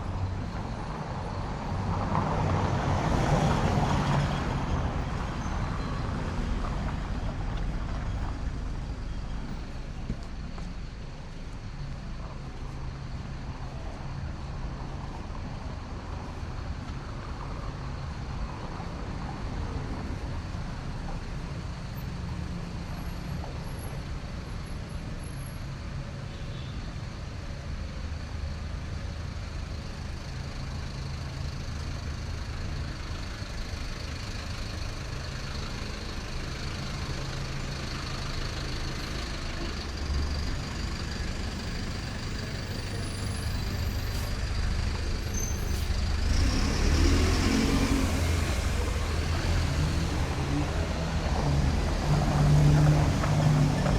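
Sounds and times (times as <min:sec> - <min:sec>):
city street traffic: 0:00.0 - 0:53.9
large vehicle engine running: 0:28.5 - 0:53.9.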